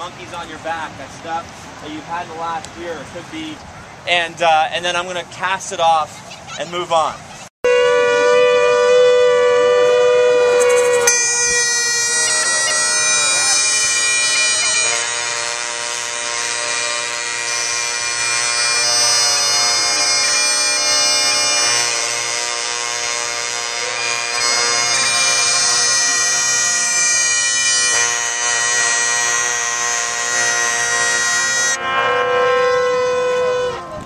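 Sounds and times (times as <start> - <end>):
droning reed instrument melody: 7.7 - 34.0.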